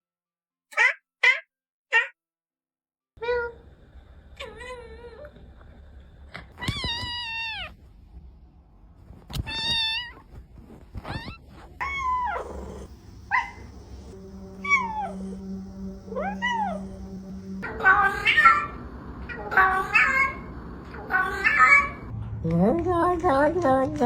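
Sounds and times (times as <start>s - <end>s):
cat meowing: 6.6s - 7.8s, 9.3s - 10.3s, 11.0s - 15.3s, 16.1s - 17.2s.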